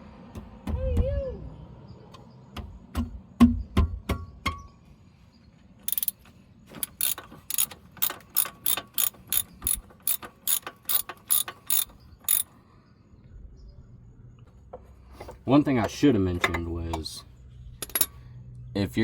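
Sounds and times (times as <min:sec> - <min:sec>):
socket ratchet clicking: 0:05.9 - 0:12.5, 0:17.8 - 0:18.1.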